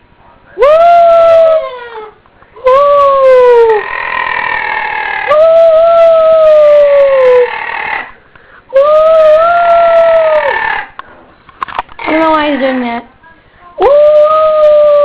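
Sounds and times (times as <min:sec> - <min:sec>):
parrot calling: 0:03.0 - 0:08.2, 0:09.1 - 0:11.0.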